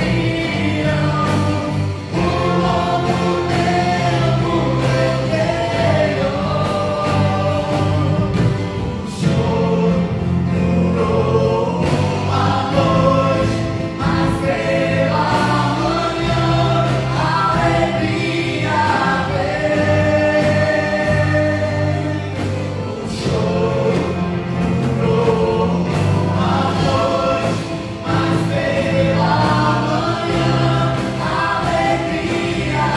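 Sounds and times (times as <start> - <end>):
band accompaniment with bass: 0.0 - 32.9
gospel choir singing: 0.0 - 32.9.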